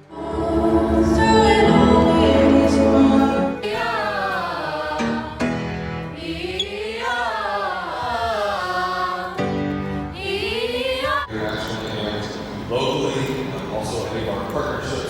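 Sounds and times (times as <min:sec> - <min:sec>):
sustained accompaniment chords: 0:00.0 - 0:06.5
voices singing slow melody: 0:00.0 - 0:12.7.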